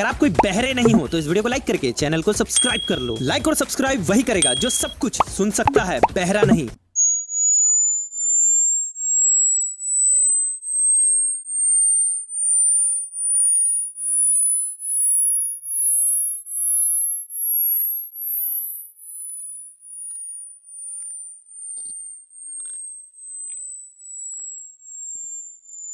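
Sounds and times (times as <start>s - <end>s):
pure high-pitched test tones: 0.4s - 1.1s, 2.6s - 3.4s, 4.4s - 6.7s.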